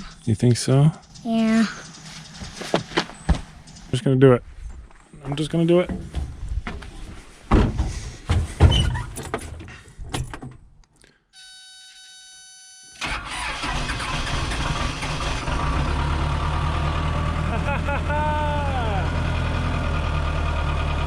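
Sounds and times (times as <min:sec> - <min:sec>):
backhoe engine running: 0:01.0 - 0:03.9, 0:13.0 - 0:21.0
engine starter clunking: 0:13.0 - 0:16.2.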